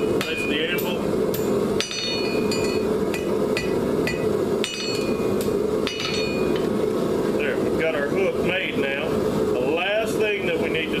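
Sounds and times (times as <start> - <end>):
steady rushing noise: 0.0 - 11.0
hammer striking anvil: 0.2 - 6.7.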